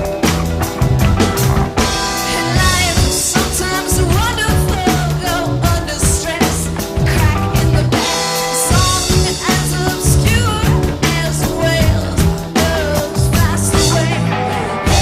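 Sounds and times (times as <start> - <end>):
bass guitar: 0.0 - 15.0
drum kit beat: 0.0 - 15.0
electric guitar: 0.0 - 15.0
person singing: 1.9 - 15.0.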